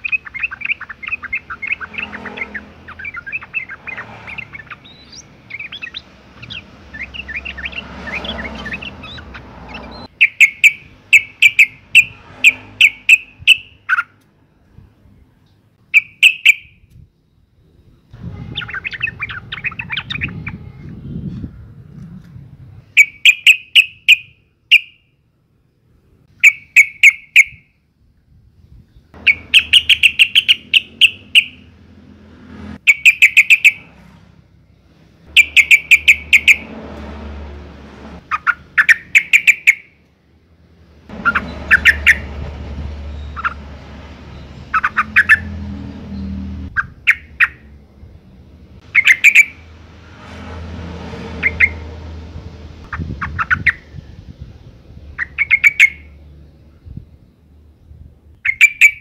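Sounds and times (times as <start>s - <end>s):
bulbul bubbly calls: 0.0s - 14.0s, 29.2s - 31.6s, 32.9s - 33.8s, 35.3s - 36.6s, 48.9s - 49.6s, 55.2s - 56.1s.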